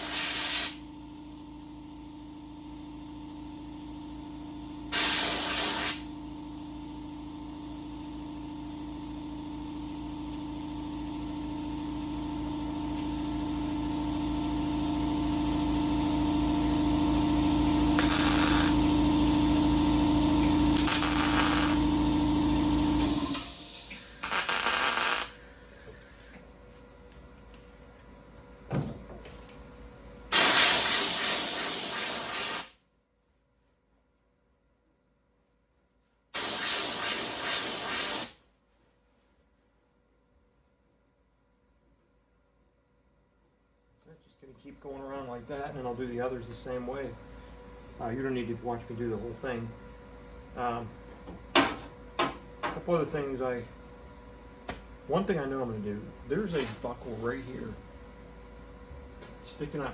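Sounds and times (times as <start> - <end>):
welding sizzle and crackle: 0.0 - 0.8, 4.9 - 6.0, 17.9 - 18.8, 20.7 - 21.9, 23.0 - 25.5, 30.3 - 32.7, 36.4 - 38.4
machine hum: 0.0 - 30.4.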